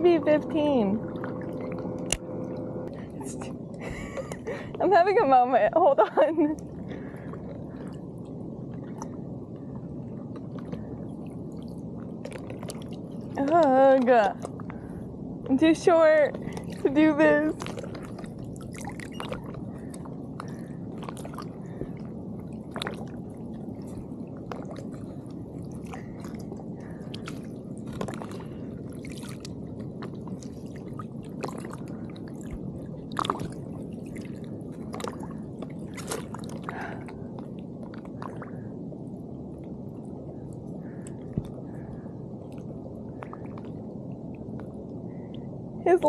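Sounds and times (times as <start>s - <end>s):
water lapping and sloshing: 0.0s - 46.0s
small splashes: 16.4s - 23.2s, 25.8s - 37.3s.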